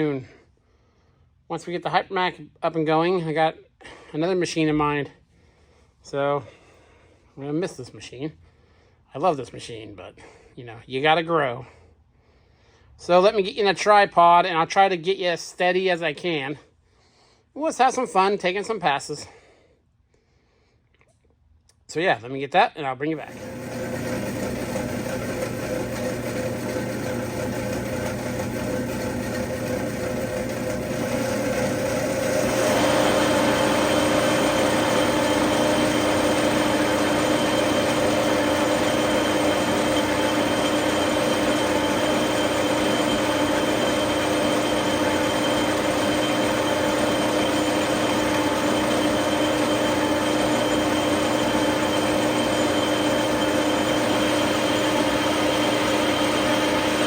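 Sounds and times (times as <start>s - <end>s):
lathe running: 23.3s - 57.0s.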